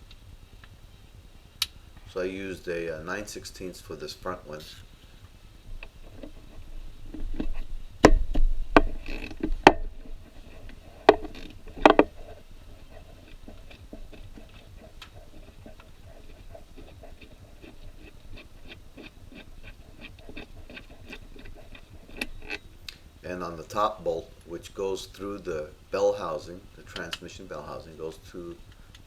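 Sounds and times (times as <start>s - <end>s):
metal knocks and clanks: 5.7s - 22.7s.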